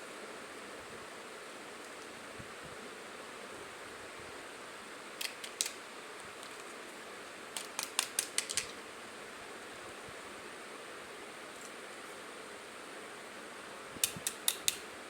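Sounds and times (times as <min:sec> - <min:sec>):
plastic toy pieces clicking: 0:05.2 - 0:05.8, 0:07.6 - 0:08.8, 0:14.0 - 0:14.8.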